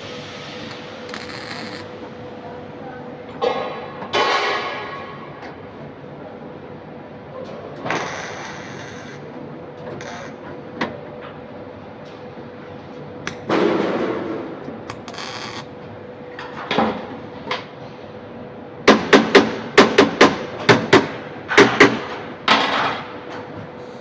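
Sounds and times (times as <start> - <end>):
hammer striking sheet metal: 0.0 - 5.3
workshop hum: 0.0 - 24.0.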